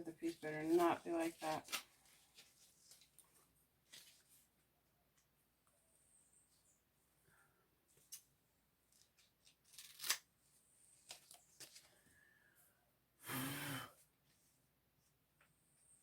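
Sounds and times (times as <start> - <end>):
tape and screen rustling: 0.0 - 5.3.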